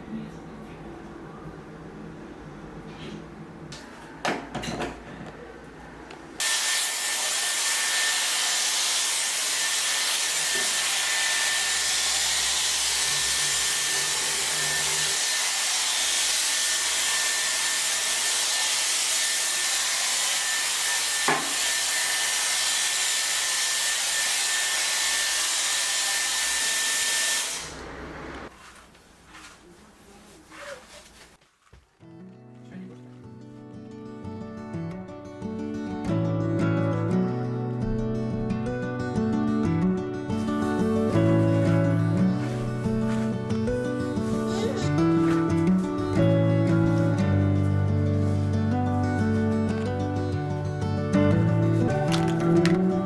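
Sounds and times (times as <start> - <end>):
small electric appliance whining: 6.4 - 28.5.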